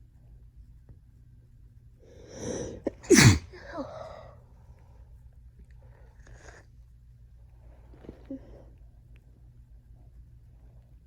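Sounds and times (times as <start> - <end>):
woman sneezing: 2.4 - 4.1.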